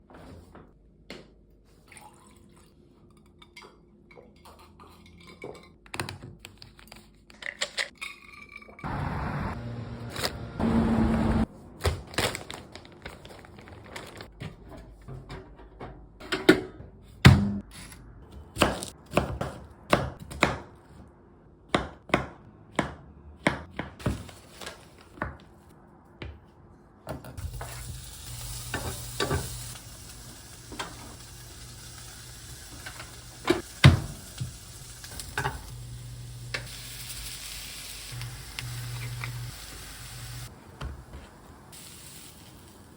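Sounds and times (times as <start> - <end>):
frying pan sizzling: 27.4 - 42.9.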